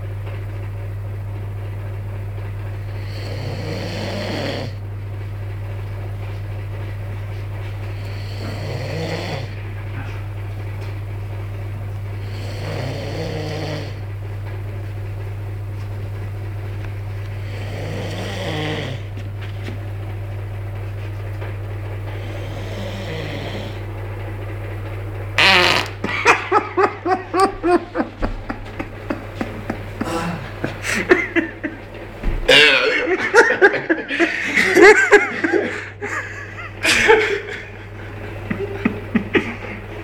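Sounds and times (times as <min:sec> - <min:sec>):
steady low hum: 0:00.0 - 0:40.0
person snoring: 0:02.9 - 0:04.8, 0:08.0 - 0:09.6, 0:12.2 - 0:14.0, 0:17.4 - 0:19.1, 0:22.2 - 0:23.8, 0:30.0 - 0:31.1
loud fart: 0:25.4 - 0:31.0, 0:32.2 - 0:33.2.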